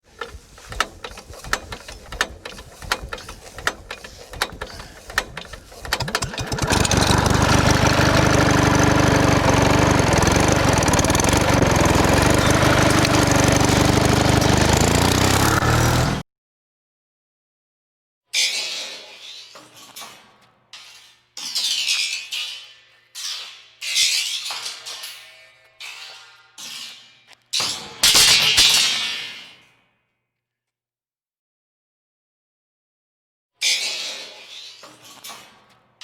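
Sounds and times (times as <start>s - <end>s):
clicks and knocks: 0.0s - 7.2s
motor running: 0.1s - 16.2s.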